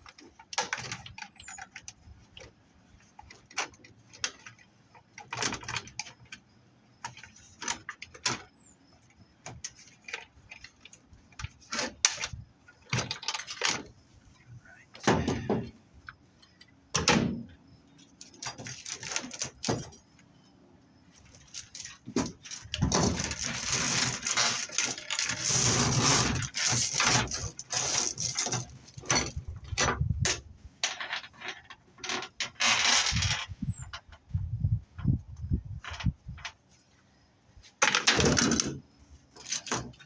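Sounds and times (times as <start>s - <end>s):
clattering scraping metal: 21.4s - 29.8s.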